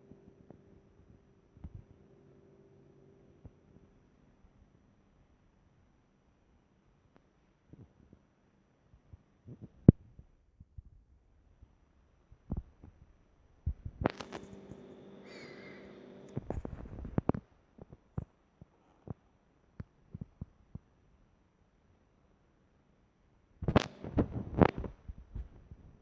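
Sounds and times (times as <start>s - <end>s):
steady hum: 0.0s - 4.4s, 13.9s - 17.3s, 23.6s - 25.2s.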